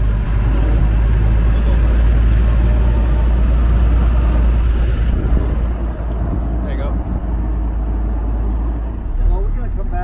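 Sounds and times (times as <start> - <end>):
car engine low rumble: 0.0 - 10.0.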